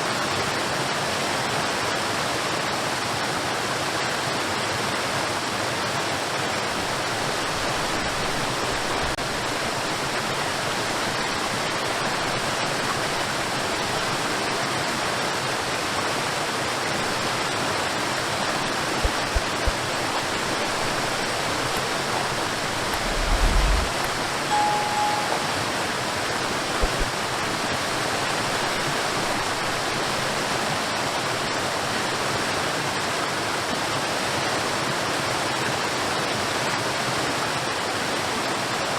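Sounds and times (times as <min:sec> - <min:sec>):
low bumps: 0:18.8 - 0:24.5.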